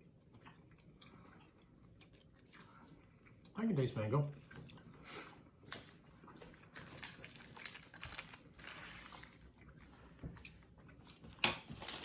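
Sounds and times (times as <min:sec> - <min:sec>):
candy wrapper clicks and rustles: 0:06.6 - 0:09.4.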